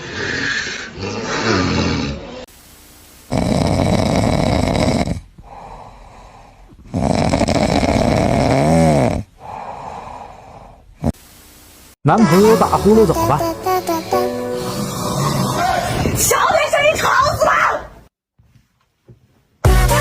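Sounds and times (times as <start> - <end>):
person snoring: 0.0 - 2.5, 3.3 - 11.2, 13.9 - 16.2
breathing out: 5.4 - 6.8, 9.4 - 10.9.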